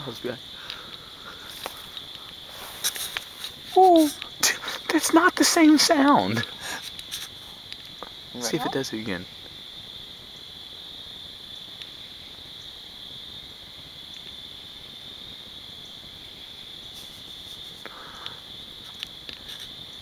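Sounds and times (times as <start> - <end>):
night insects trilling: 0.0 - 20.0
short rustle: 1.5 - 4.2.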